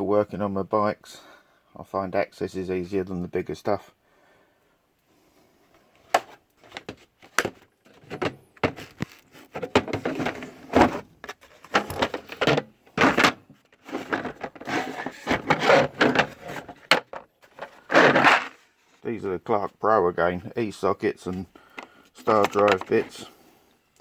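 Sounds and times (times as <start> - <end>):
metal tools clattering in drawer: 9.6 - 13.3.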